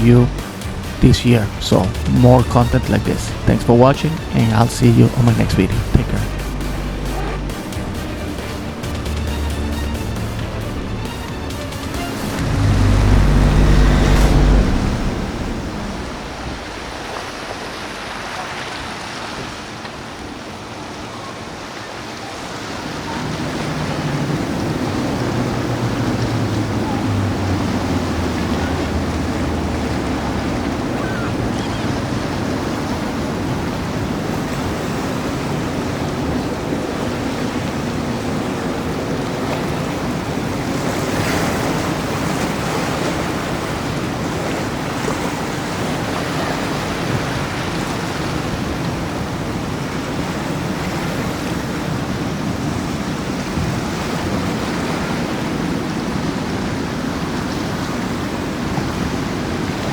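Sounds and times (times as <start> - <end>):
low hum: 0.0 - 18.1
rushing water: 0.0 - 59.9
wind: 4.0 - 59.9.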